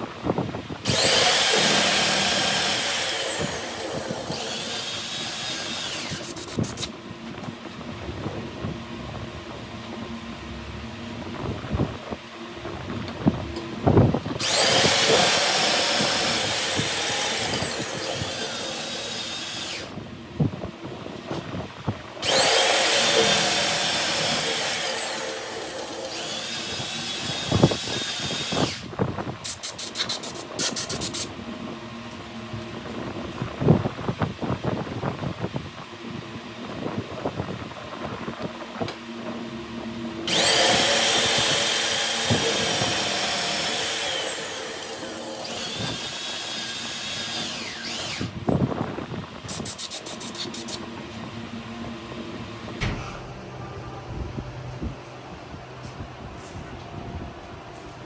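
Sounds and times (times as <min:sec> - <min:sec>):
power tool grinding metal: 0:00.8 - 0:06.9, 0:14.4 - 0:20.0, 0:22.2 - 0:28.9, 0:40.2 - 0:48.3.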